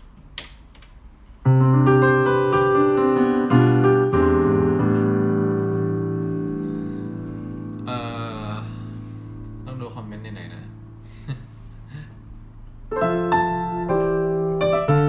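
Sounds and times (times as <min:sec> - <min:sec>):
piano chords: 0:01.4 - 0:15.0.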